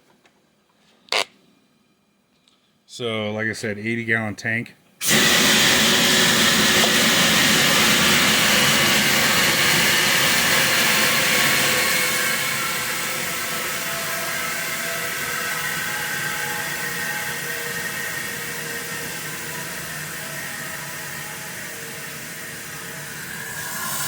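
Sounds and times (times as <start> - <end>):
compressed air hissing through muffler: 5.0 - 11.1.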